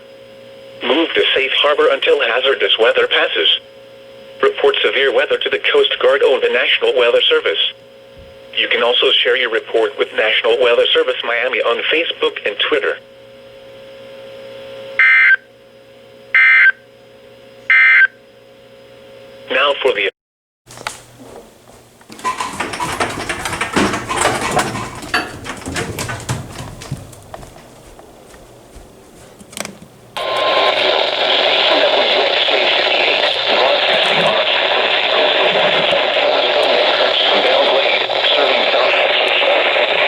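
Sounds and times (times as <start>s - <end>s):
radio hiss and hum: 0.8s - 3.7s, 4.3s - 7.8s, 8.5s - 13.1s, 19.4s - 20.1s, 29.5s - 40.0s.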